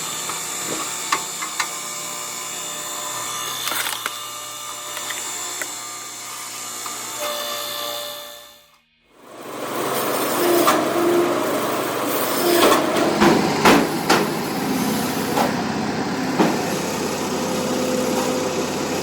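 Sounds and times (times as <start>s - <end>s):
machine engine running: 9.1s - 19.0s
sharp knocks: 12.7s - 14.4s.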